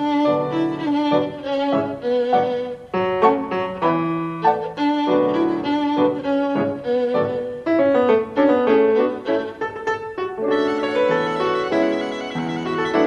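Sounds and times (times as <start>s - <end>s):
bowed strings over piano: 0.0s - 13.0s.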